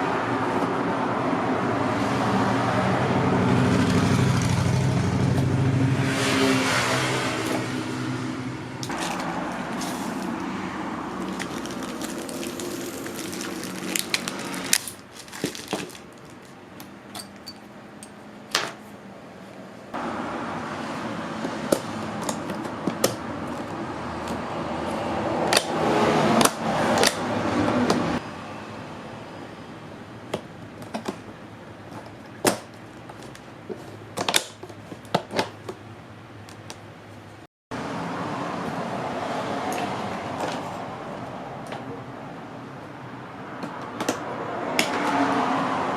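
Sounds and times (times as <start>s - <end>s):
steady background hum: 7.3s - 37.4s.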